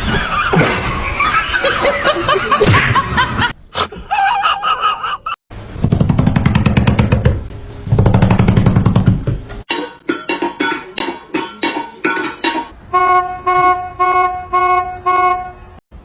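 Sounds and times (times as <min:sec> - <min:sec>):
music with rapid even beat: 0:09.9 - 0:12.7.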